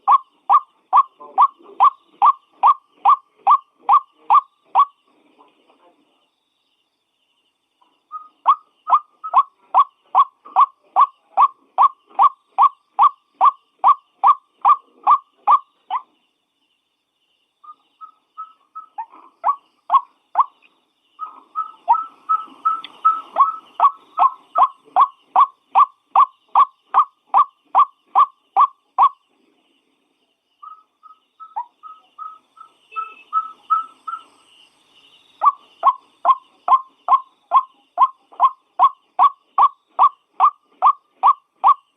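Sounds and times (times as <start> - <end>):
waterhen calling: 21.2 - 29.2, 35.4 - 41.8.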